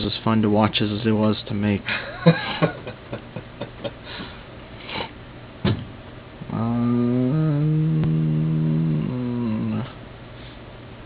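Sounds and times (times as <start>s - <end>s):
man humming: 6.4s - 10.0s.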